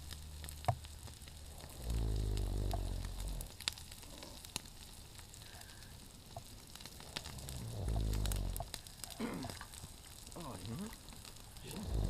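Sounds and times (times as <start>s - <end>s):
faint crackling clicks: 0.0s - 12.0s
person snoring: 1.5s - 3.5s, 7.2s - 8.7s, 11.6s - 12.0s.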